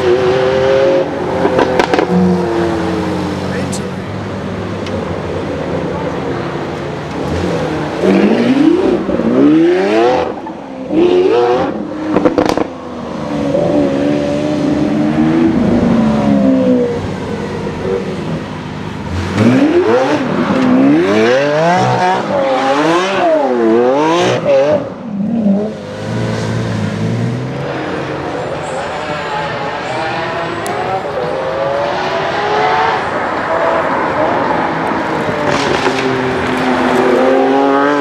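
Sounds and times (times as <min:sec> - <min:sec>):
car engine revving hard: 0:00.0 - 0:38.0.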